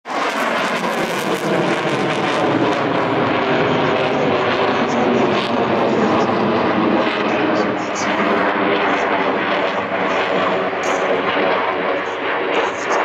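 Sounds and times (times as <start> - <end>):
fighter jet rushing roar: 0.1 - 13.0.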